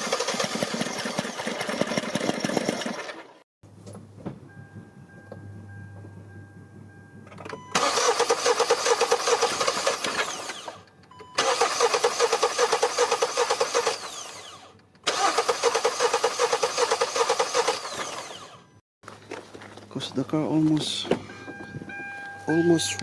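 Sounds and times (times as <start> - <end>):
engine cranking without starting: 0.0 - 3.4, 7.3 - 18.8
short warning tone: 21.2 - 23.0.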